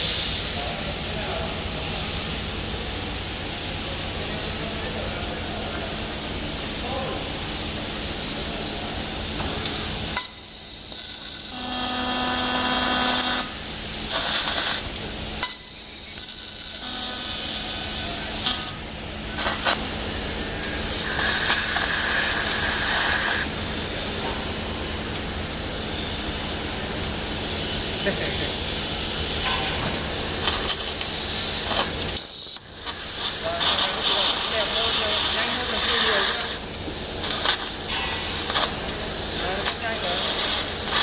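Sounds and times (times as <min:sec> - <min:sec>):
machine hum: 0:16.7 - 0:32.8
hiss of assist gas: 0:19.4 - 0:25.8, 0:30.0 - 0:41.0.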